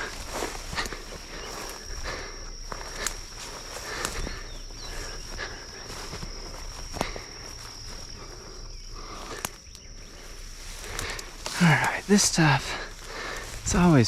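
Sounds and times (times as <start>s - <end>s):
footsteps through brush: 0.0s - 14.0s
insect trill: 0.0s - 14.0s
sharp twig snaps: 2.8s - 3.2s, 4.0s - 4.3s, 9.3s - 9.8s, 10.8s - 12.0s.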